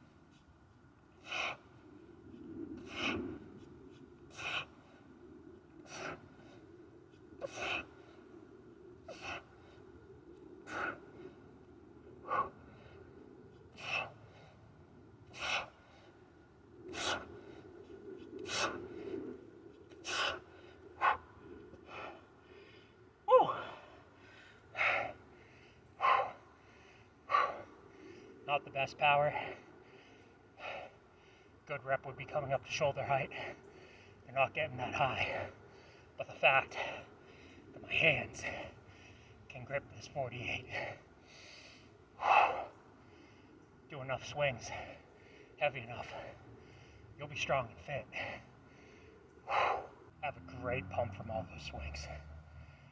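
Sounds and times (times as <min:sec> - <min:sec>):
man breathing forcefully: 0:02.8 - 0:03.5, 0:04.3 - 0:05.0, 0:13.7 - 0:17.7, 0:20.0 - 0:28.0
man grunting: 0:23.3 - 0:23.8.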